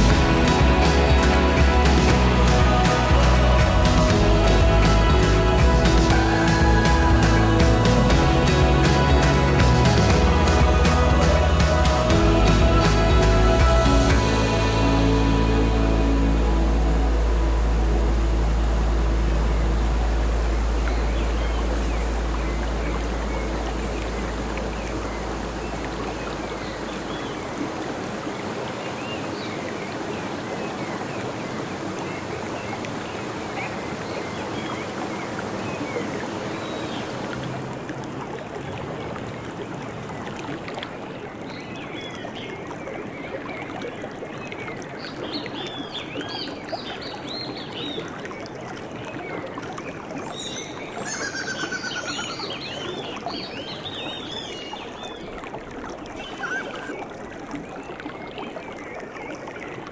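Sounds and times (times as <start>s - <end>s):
stream running over stones: 0.0s - 59.9s
birds chirping: 45.1s - 55.4s, 56.2s - 57.0s
bird trill: 50.3s - 55.1s, 56.2s - 56.9s.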